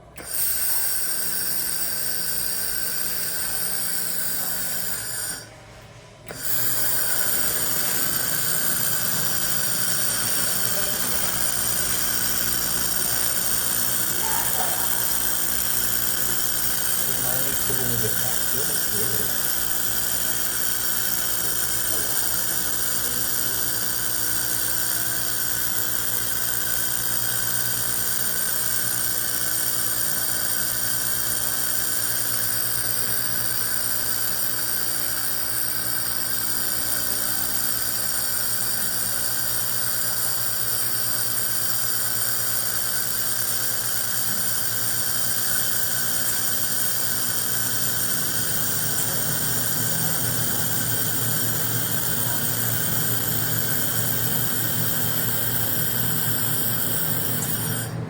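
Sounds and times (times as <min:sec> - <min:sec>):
laser welder hiss and whine: 0:00.0 - 0:05.6, 0:06.2 - 0:58.0.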